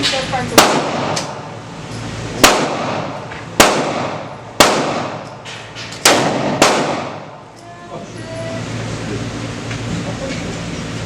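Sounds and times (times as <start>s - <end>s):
gunshots with ringing tail: 0.6s - 1.5s, 2.4s - 5.2s, 6.0s - 7.4s.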